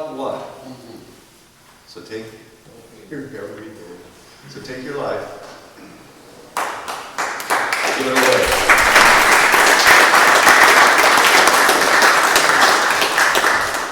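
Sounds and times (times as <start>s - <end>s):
audience applauding: 6.5s - 13.9s.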